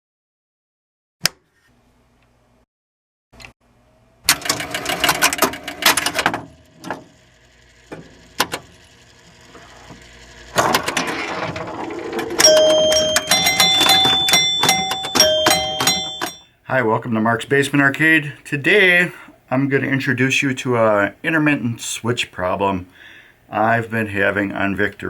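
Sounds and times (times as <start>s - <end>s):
pinball machine clicking: 4.3s - 7.2s, 7.8s - 8.8s, 10.5s - 16.4s.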